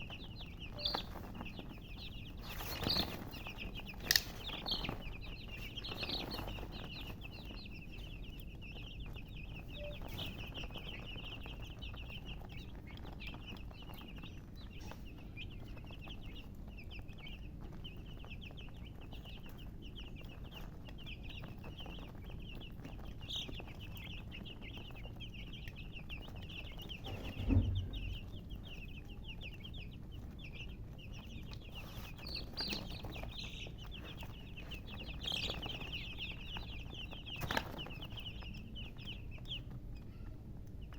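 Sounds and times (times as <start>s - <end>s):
baby chicks peeping: 0.0s - 40.9s
low thump: 27.1s - 28.5s.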